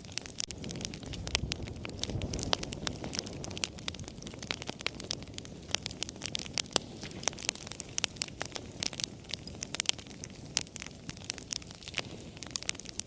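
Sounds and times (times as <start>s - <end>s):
wood fire crackling: 0.0s - 13.0s.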